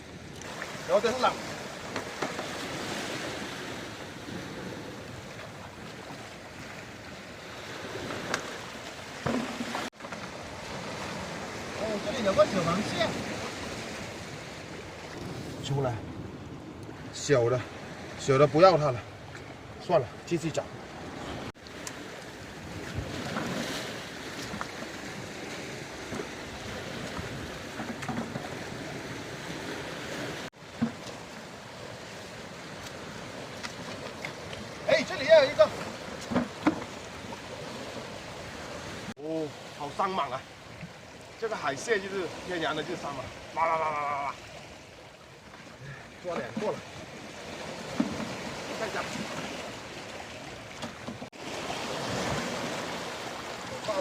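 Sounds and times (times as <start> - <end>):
sea surf washing: 0.0 - 54.0.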